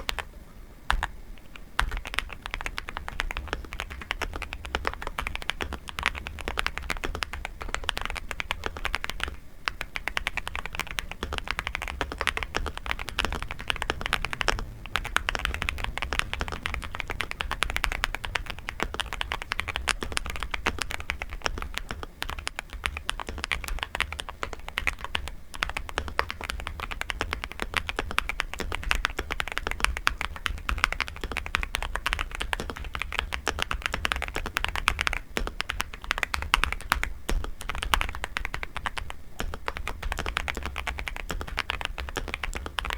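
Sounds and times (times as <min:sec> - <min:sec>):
mechanical keyboard typing: 0:00.0 - 0:00.3, 0:00.9 - 0:42.9.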